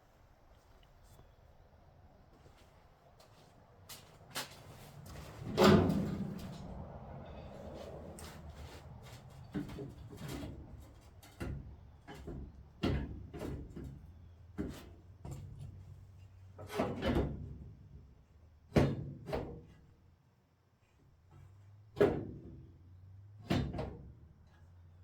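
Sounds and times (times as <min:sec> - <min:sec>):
knocks and clunks of parts being fitted: 0:05.4 - 0:06.6.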